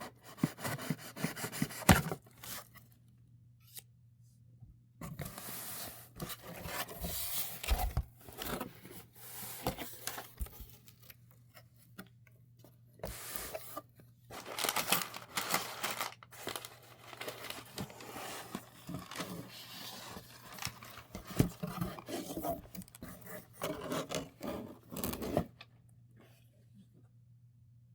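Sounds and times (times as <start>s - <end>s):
paper and plastic rustling: 5.2s - 12.0s, 13.0s - 25.6s.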